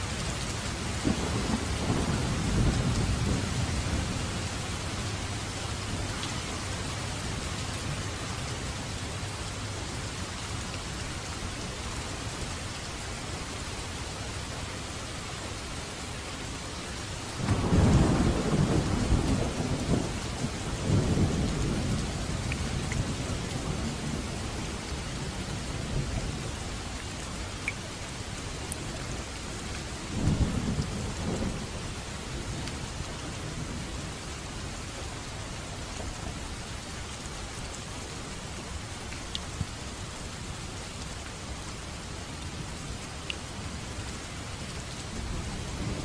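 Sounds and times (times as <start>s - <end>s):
heavy rain: 0.0s - 46.0s
thunder rumbling: 0.7s - 6.7s, 17.4s - 26.6s, 45.0s - 46.0s.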